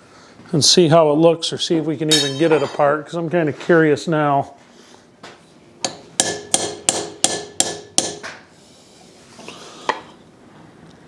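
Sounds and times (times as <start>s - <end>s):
hammer striking chisel on metal: 2.1s - 2.8s, 5.8s - 8.3s.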